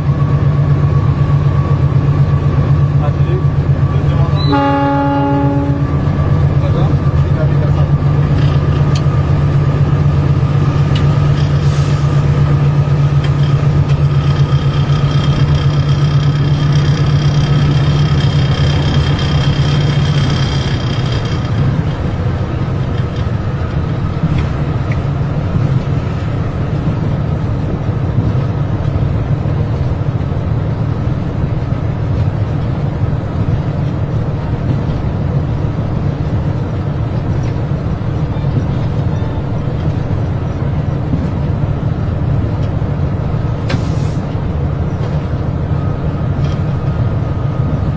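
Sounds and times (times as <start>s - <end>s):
train running on rails: 0.0s - 47.9s.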